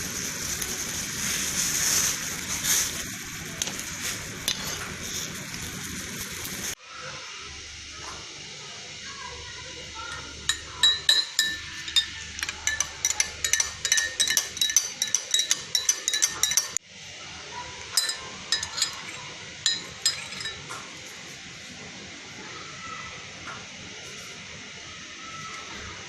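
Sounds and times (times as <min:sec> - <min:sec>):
spoon clinking against glass: 0:10.1 - 0:16.8, 0:17.9 - 0:20.8.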